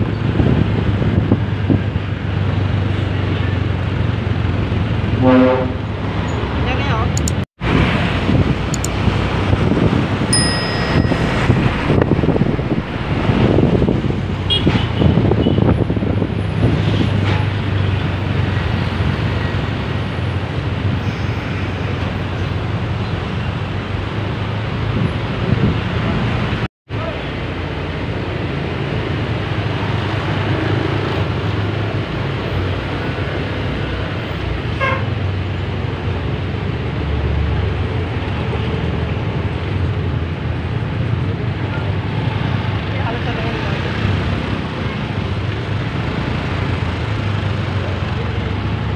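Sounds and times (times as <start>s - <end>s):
bus engine running: 0.0s - 48.9s
road traffic: 0.0s - 48.9s
horn toots: 5.2s - 6.0s.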